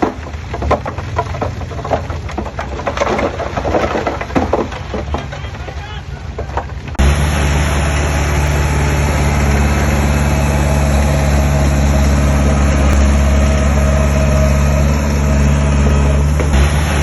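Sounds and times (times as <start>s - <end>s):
diesel engine droning: 5.0s - 17.0s.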